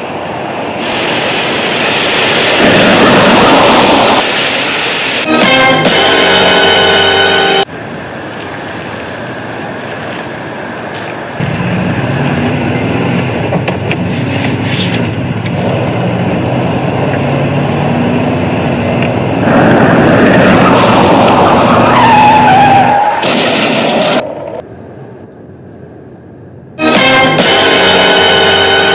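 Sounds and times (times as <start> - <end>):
hissing burst: 0.3 - 5.3.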